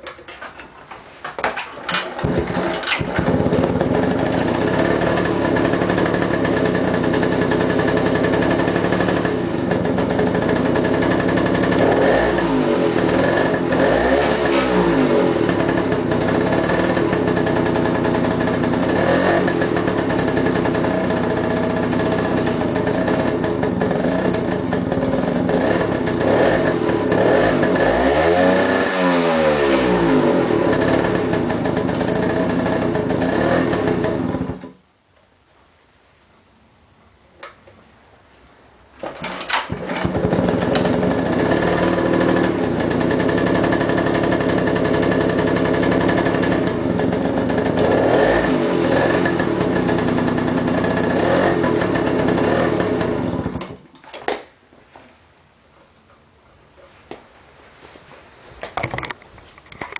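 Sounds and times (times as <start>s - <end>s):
moped engine idling and revving: 2.0s - 34.8s, 39.0s - 53.8s.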